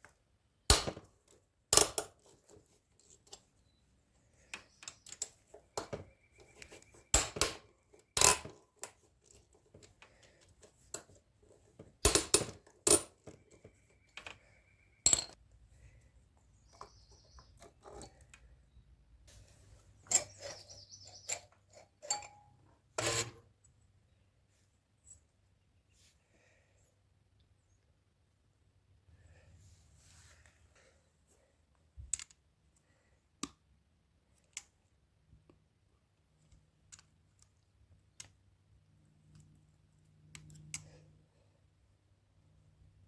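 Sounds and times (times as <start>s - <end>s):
metal tools clanking: 20.0s - 23.4s
brief metallic rings: 22.0s - 23.4s.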